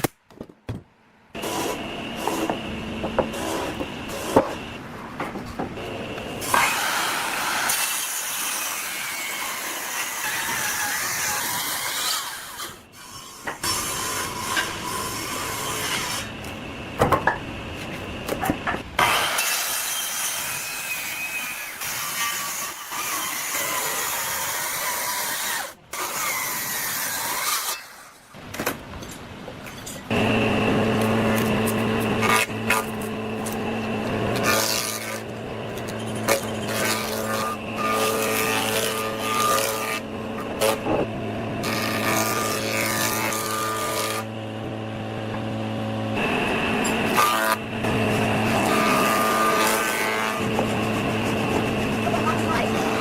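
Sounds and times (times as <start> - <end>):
steady motor hum: 1.3 - 7.8, 30.1 - 53.0
tools sawing wood: 1.4 - 4.6, 6.4 - 16.4, 19.0 - 28.0, 30.1 - 44.4, 46.2 - 53.0.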